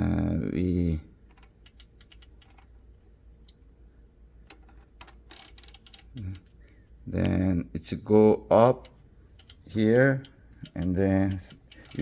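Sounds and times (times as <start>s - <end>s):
typewriter mechanism clicking: 1.3s - 2.7s, 4.5s - 6.5s, 8.6s - 12.0s.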